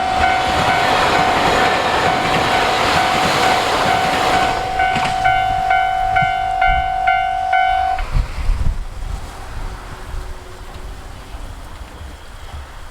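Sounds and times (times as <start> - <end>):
two-tone crossing alarm ding: 0.0 - 8.1
low rumble of passing train: 0.0 - 12.9
low thumps: 2.0 - 8.9.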